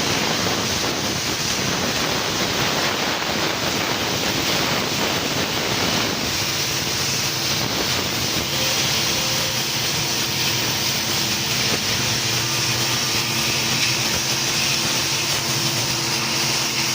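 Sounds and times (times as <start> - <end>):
laser cutting machine hiss: 0.0 - 16.9
low hum of steady tones: 8.3 - 10.1.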